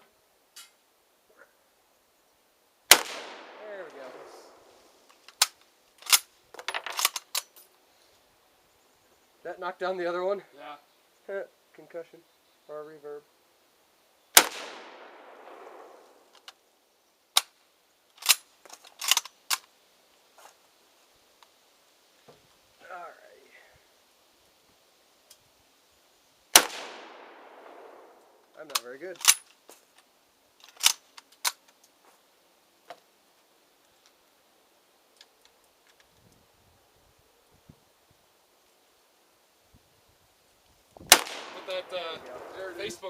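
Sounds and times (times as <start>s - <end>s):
gunshot with echo: 2.9s - 4.6s, 14.4s - 15.9s, 41.1s - 42.9s
rifle shot: 2.9s - 4.7s, 14.4s - 16.3s, 26.5s - 28.3s, 41.1s - 43.0s.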